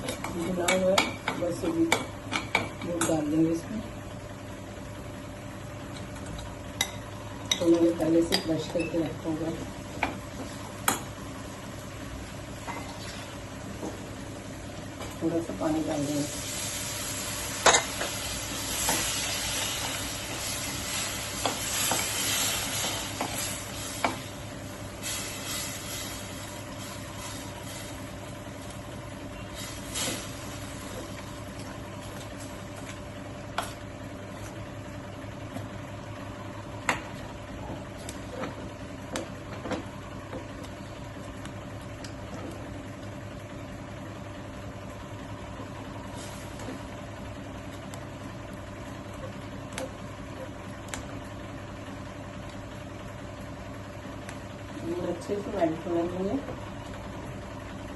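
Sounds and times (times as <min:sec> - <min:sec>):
water sizzling in hot pan: 0:15.5 - 0:31.7.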